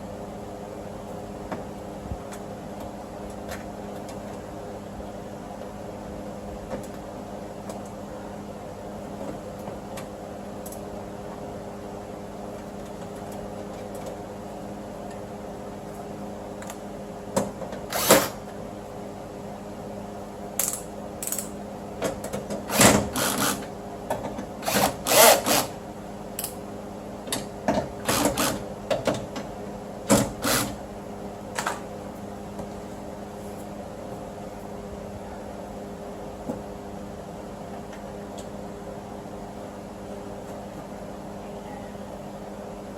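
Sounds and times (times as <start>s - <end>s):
steady background hum: 0.0s - 42.9s
power tool fastening bolts: 17.9s - 18.4s, 22.7s - 23.7s, 24.6s - 25.8s, 28.0s - 28.6s, 30.1s - 30.8s.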